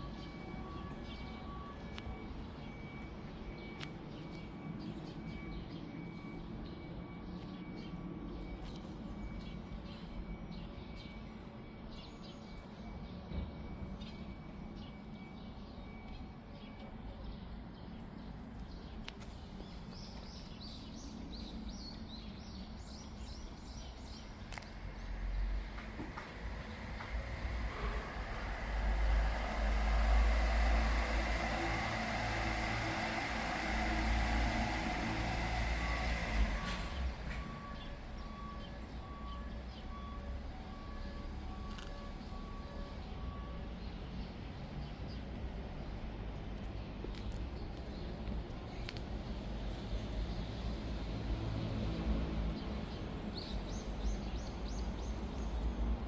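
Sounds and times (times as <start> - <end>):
vehicle low rumble: 0.0 - 56.0
steady low rumble: 24.0 - 39.2.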